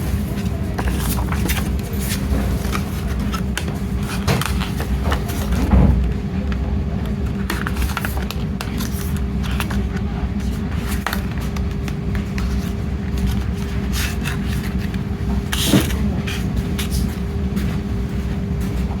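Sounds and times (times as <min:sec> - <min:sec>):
faint constant hum: 0:00.0 - 0:19.0
scrape or crinkle: 0:12.2 - 0:17.2.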